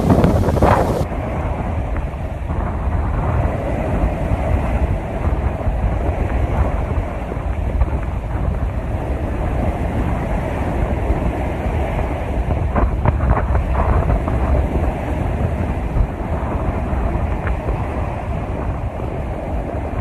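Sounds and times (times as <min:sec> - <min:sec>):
strong storm wind blowing: 0:00.0 - 0:20.0
wind buffeting on microphone: 0:00.0 - 0:20.0.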